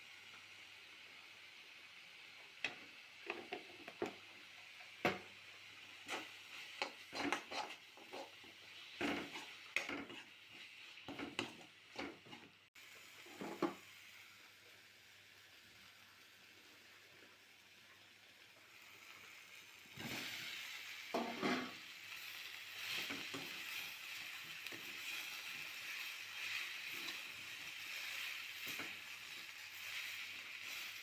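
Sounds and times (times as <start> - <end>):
spatula scraping a pan: 6.0 - 12.6, 20.0 - 31.0
faint steady hiss: 12.0 - 31.0.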